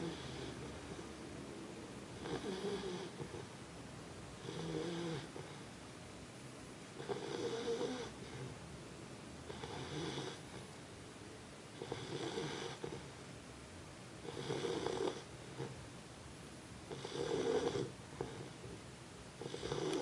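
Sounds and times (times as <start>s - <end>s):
pet snoring: 0.0s - 1.0s, 2.2s - 3.5s, 4.4s - 5.6s, 7.0s - 8.5s, 9.5s - 10.7s, 11.7s - 13.1s, 14.2s - 15.8s, 16.9s - 18.8s, 19.4s - 20.0s
quiet breathing: 0.0s - 1.4s, 2.1s - 3.6s, 4.4s - 5.8s, 7.0s - 8.7s, 9.4s - 10.8s, 11.7s - 13.2s, 16.9s - 20.0s.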